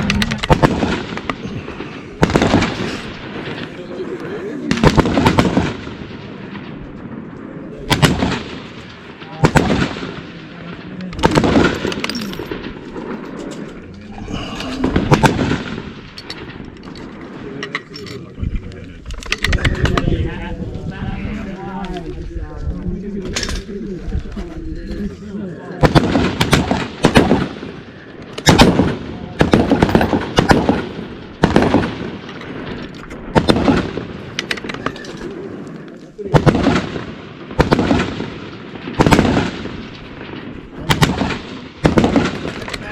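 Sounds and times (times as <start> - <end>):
rifle shot: 0.0 - 3.9, 4.7 - 7.1, 7.8 - 13.7, 14.8 - 17.3, 25.8 - 35.2, 36.3 - 42.9.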